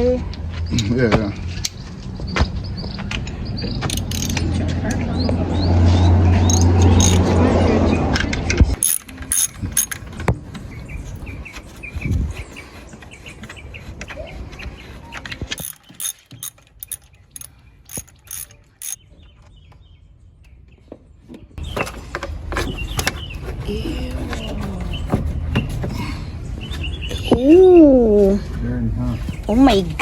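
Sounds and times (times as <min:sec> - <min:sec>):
sharp mechanical clicks: 0:15.6 - 0:19.0.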